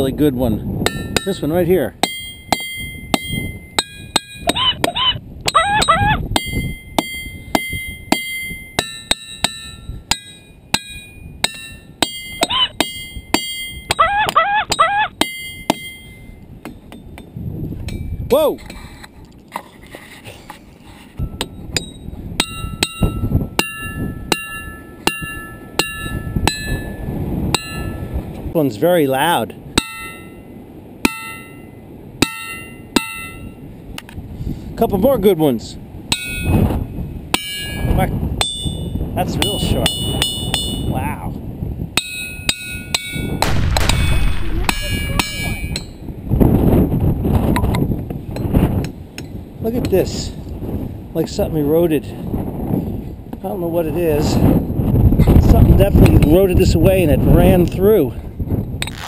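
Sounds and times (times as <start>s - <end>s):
hammer striking ringing boulder: 0.8s - 4.9s, 6.2s - 14.1s, 14.7s - 18.2s, 21.2s - 28.1s, 42.0s - 46.1s
low rumbling noise: 43.4s - 46.5s.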